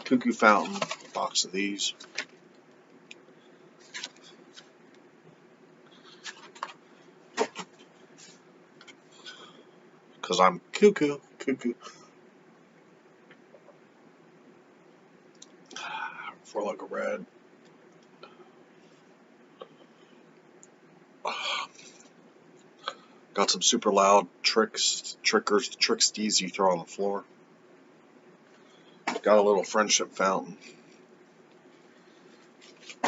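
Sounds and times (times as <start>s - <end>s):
faint steady hum: 0.0s - 33.0s
packaging clicks and rustles: 0.4s - 2.4s, 3.8s - 4.7s.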